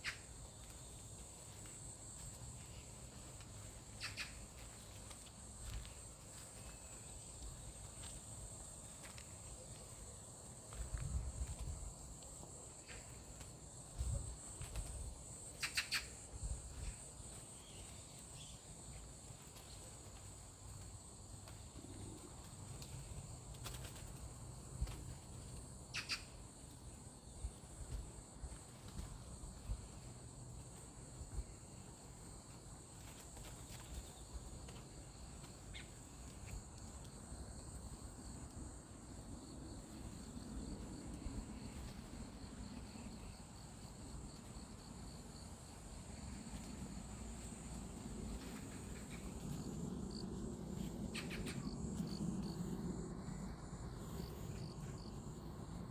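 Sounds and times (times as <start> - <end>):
insects trilling: 0.0 - 55.9.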